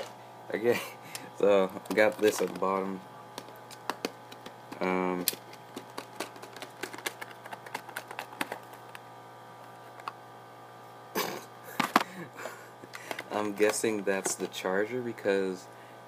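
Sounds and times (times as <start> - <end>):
hands handling box packaging: 1.6 - 9.0.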